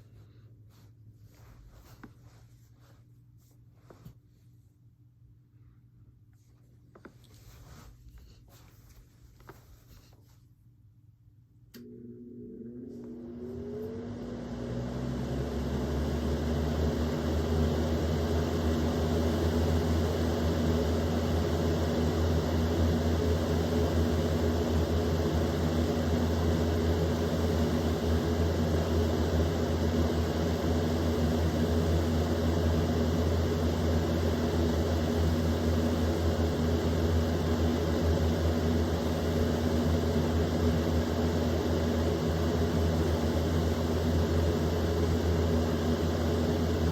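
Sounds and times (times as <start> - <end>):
electric fan motor humming: 11.7 - 46.9.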